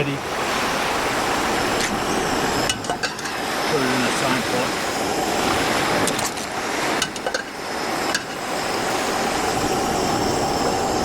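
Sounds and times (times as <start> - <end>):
steady rushing hiss: 0.0 - 11.0
utensils clinking against pot: 2.7 - 3.4, 7.0 - 7.5, 8.1 - 8.4.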